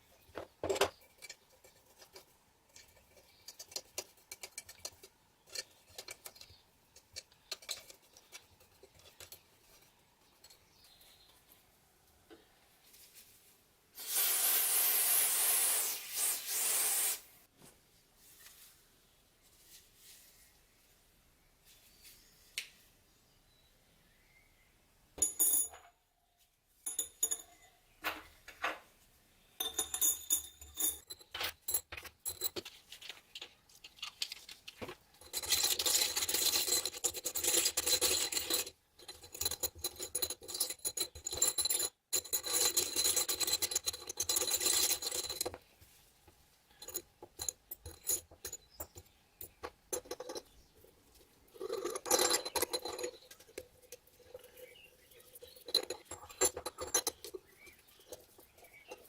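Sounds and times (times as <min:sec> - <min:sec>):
metal clicks and clinks: 0:00.7 - 0:10.9, 0:26.8 - 0:27.7, 0:29.6 - 0:34.3, 0:35.2 - 0:45.6, 0:46.7 - 0:50.6, 0:51.5 - 0:59.0.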